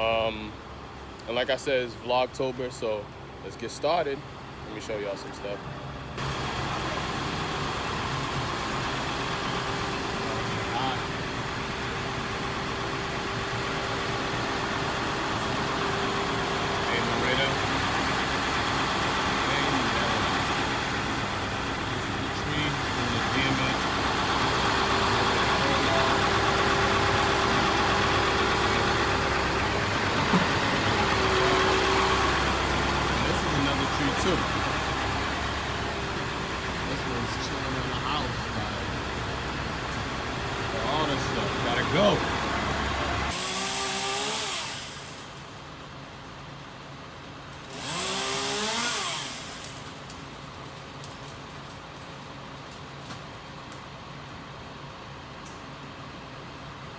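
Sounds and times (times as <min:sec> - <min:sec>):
engine idling: 0:00.0 - 0:56.9
chainsaw revving: 0:22.3 - 0:35.4, 0:43.2 - 0:45.5, 0:47.7 - 0:50.1.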